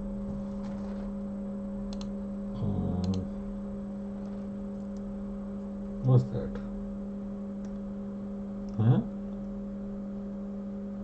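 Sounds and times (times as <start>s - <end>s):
low electrical hum: 0.0s - 11.0s
light clicks: 1.9s - 2.1s
person humming: 2.5s - 3.4s.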